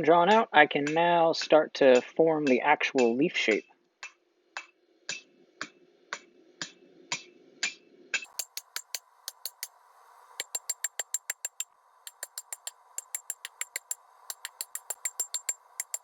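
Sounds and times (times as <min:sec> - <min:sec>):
steady hiss: 0:08.2 - 0:16.0
hammer ringing on steel anvil: 0:10.4 - 0:16.0.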